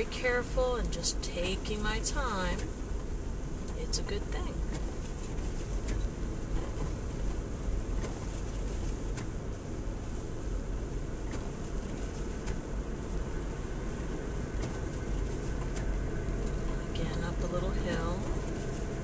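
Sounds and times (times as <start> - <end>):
car engine and tyres on snow: 0.0 - 19.0.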